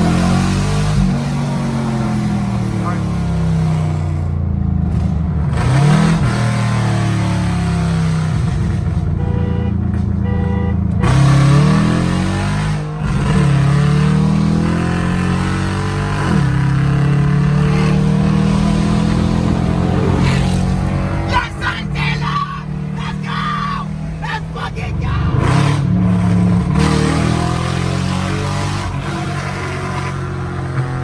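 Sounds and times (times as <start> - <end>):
car engine revving: 0.0 - 9.1, 11.0 - 31.0.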